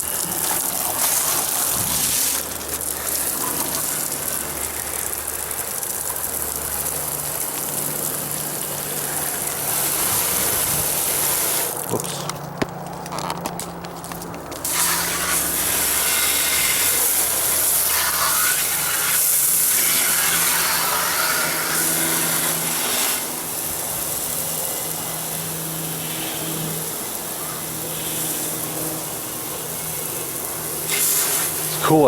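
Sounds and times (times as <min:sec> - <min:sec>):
hose water spraying on cabinet: 0:00.0 - 0:11.9, 0:14.6 - 0:32.0.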